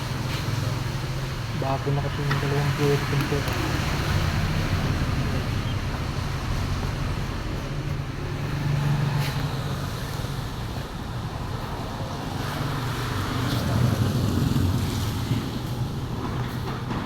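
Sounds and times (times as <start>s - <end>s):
diesel engine idling: 0.0s - 13.0s.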